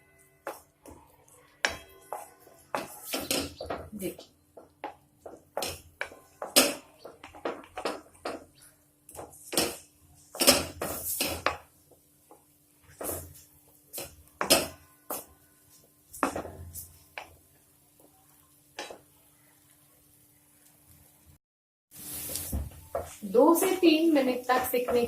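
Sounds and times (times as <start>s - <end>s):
spatula scraping a pan: 1.4s - 3.8s, 9.2s - 11.6s, 12.9s - 17.2s
ginger frying in oil: 2.4s - 25.0s.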